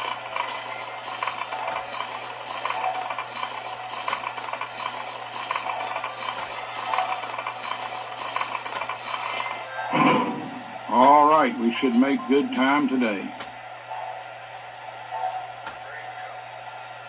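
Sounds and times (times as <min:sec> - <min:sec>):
model locomotive rattling: 0:00.0 - 0:09.7
constant high tone: 0:00.0 - 0:09.9.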